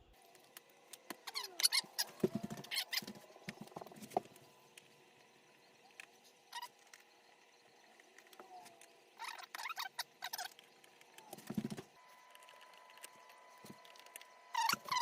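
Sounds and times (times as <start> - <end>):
plastic casing squeaking and scraping: 1.1 - 4.4, 6.1 - 15.0.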